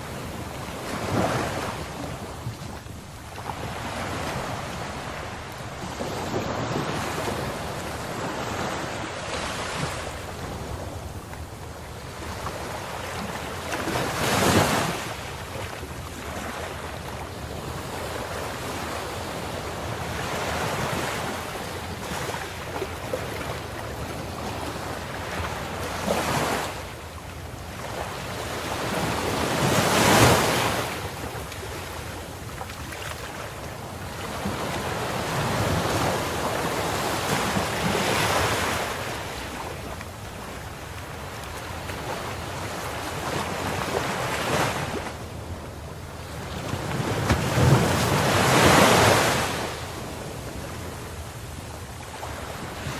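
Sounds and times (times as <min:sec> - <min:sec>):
ocean waves crashing: 0:34.2 - 0:51.6.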